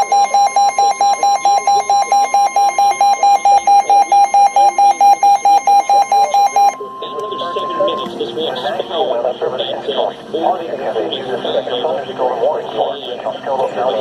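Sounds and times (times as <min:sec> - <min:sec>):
rapid electronic beeping: 0:00.0 - 0:10.1
steady high warning tone: 0:00.0 - 0:10.2.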